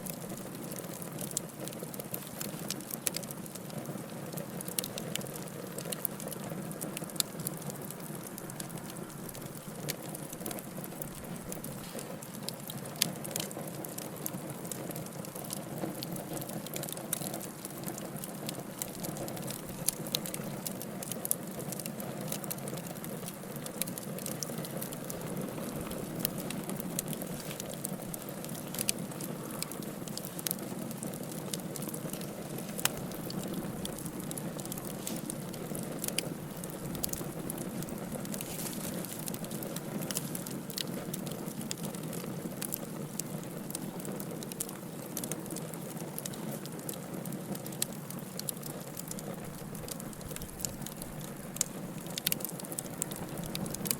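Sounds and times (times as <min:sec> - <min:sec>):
campfire crackling and popping: 0:00.0 - 0:53.9.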